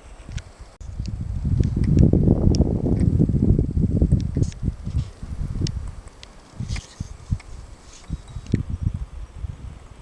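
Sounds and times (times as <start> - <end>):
rustling: 4.4 - 8.5
faint clicks: 5.6 - 8.6.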